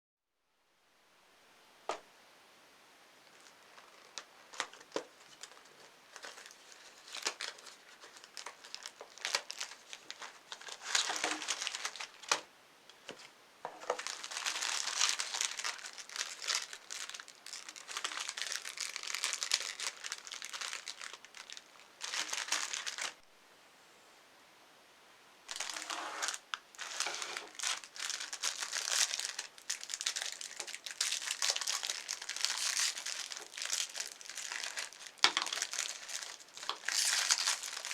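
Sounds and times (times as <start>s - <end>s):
plastic packaging crinkling: 3.2s - 23.2s, 25.5s - 37.9s
cookies being crushed: 3.3s - 12.5s, 13.7s - 23.2s, 26.8s - 37.9s.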